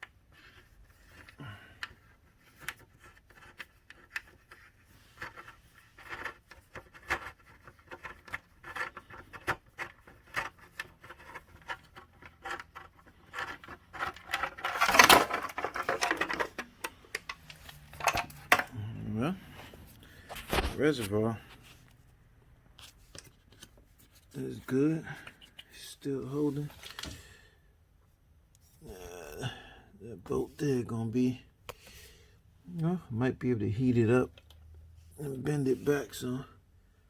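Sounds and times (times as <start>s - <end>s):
plastic scraping and rustling: 0.0s - 22.1s
plastic panels clicking and tapping: 0.4s - 18.7s.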